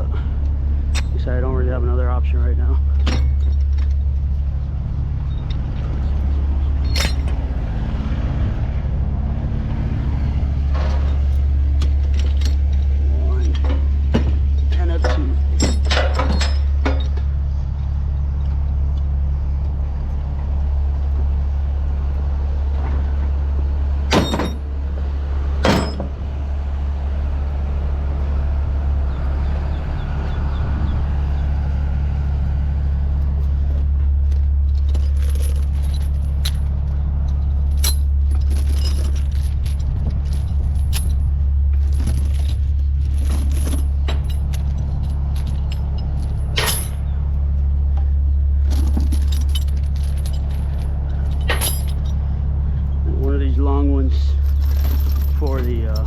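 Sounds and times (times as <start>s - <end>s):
diesel engine idling: 0.0s - 56.0s
metallic clinking and jangling: 2.9s - 4.6s, 5.2s - 7.5s, 10.8s - 19.1s, 33.4s - 47.2s, 47.9s - 53.0s, 54.1s - 56.0s
sharp metal clanks: 6.8s - 7.5s, 10.7s - 17.3s, 24.1s - 24.7s, 41.9s - 47.1s, 48.6s - 52.2s.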